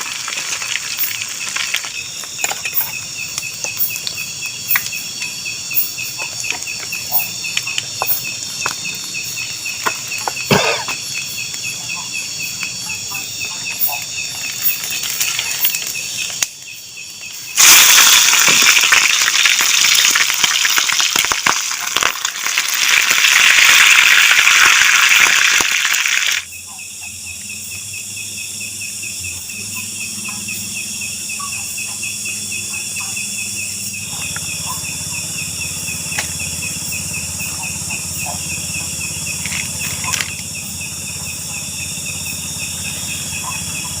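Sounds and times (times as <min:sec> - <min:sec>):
insects chirring: 0:00.0 - 0:44.0
loud even hiss: 0:17.6 - 0:20.8.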